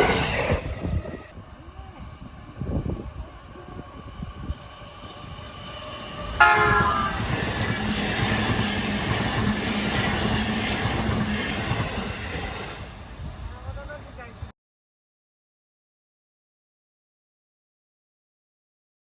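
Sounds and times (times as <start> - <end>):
train wheels on rails: 0.0 - 14.4
crossing warning bells: 5.8 - 12.2
train horn blast: 6.4 - 7.3.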